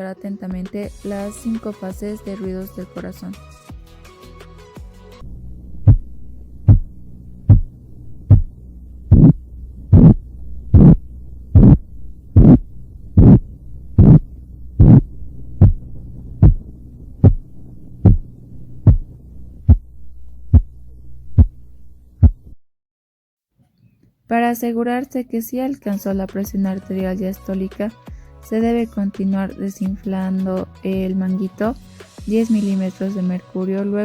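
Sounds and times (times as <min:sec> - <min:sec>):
steady low hum: 0:05.2 - 0:22.6
heartbeat thuds through stethoscope: 0:05.9 - 0:06.1, 0:06.7 - 0:06.9, 0:07.5 - 0:08.5, 0:09.1 - 0:11.0, 0:11.6 - 0:11.8, 0:12.4 - 0:19.9, 0:20.5 - 0:20.8, 0:21.4 - 0:21.6, 0:22.2 - 0:22.6.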